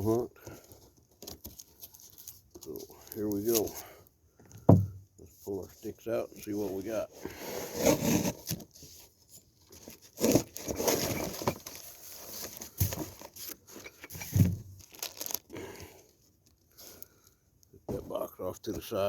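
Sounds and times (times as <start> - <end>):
cardboard and packaging rustling: 0.0 - 4.0, 4.6 - 19.0
knocks: 4.6 - 5.0
low thump: 4.6 - 5.0.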